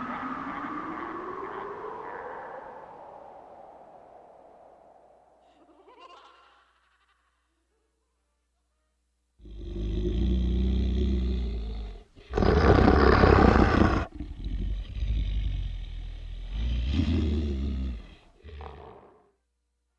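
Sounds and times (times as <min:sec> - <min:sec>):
deep growling roar: 0:09.4 - 0:19.2.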